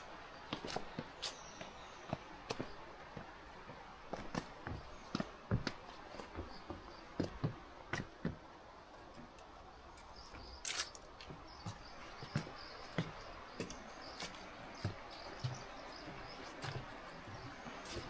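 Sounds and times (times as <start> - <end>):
footsteps on a trail: 0.0 - 18.0.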